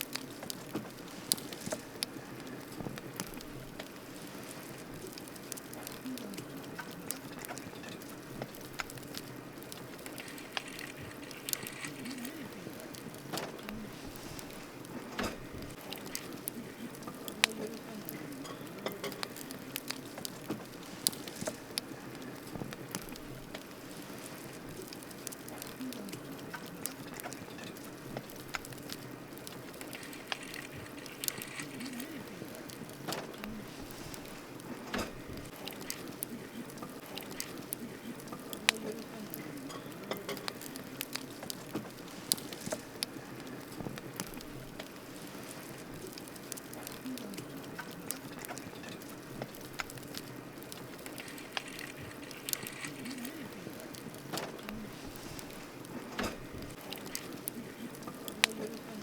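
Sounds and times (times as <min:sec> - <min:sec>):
campfire crackling hiss: 0:00.0 - 0:59.0
campfire pops and snaps: 0:00.0 - 0:59.0.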